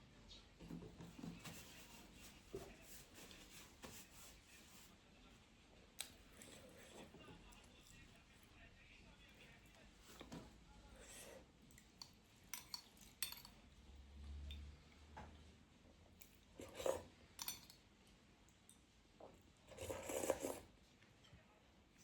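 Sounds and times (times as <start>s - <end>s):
cutlery clicking against a dish: 11.8s - 13.6s, 17.4s - 17.8s.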